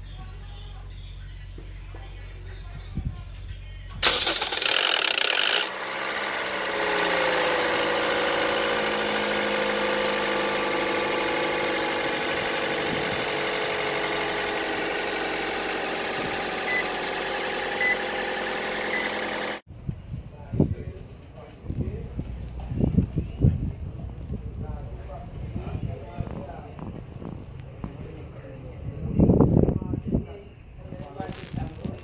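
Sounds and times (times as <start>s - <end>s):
car engine starting and idling: 4.0s - 19.7s.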